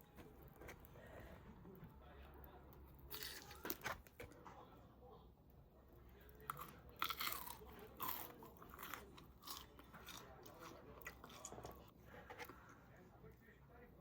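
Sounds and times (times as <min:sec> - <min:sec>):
person chewing crunchy food: 0:03.0 - 0:04.2, 0:06.4 - 0:12.7.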